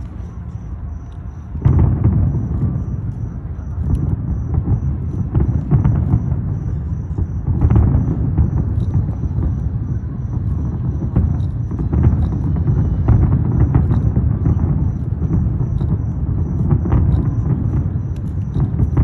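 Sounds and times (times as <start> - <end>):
fireworks booming: 0.0 - 19.0.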